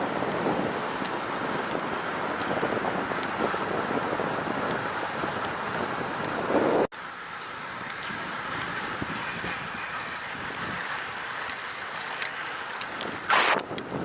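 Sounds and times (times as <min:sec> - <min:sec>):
wind rushing over microphone: 0:00.0 - 0:06.9, 0:12.8 - 0:14.0.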